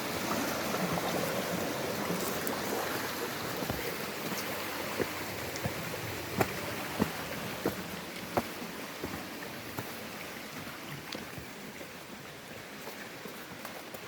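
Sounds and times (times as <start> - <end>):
stream water running: 0.0 - 14.0
footsteps clicking on path: 3.6 - 10.0.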